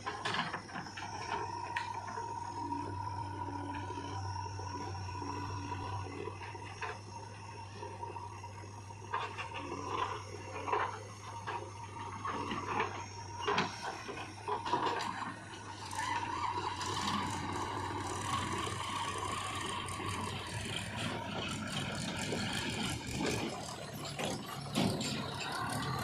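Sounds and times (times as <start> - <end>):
diesel engine running: 0.0 - 26.0
whine: 0.0 - 26.0
metal rattling and scraping: 16.8 - 26.0.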